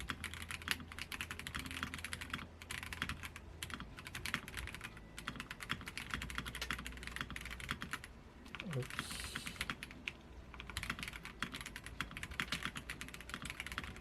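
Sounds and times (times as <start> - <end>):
mechanical keyboard typing: 0.0 - 14.0.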